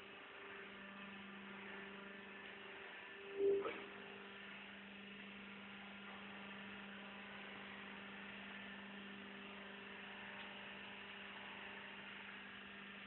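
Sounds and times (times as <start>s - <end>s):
baler machine hum: 0.0s - 13.0s
brief loud tone: 3.2s - 4.0s.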